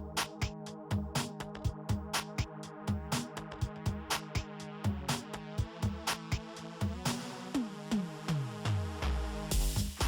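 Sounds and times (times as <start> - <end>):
electronic music with drum-machine beat: 0.0 - 10.0.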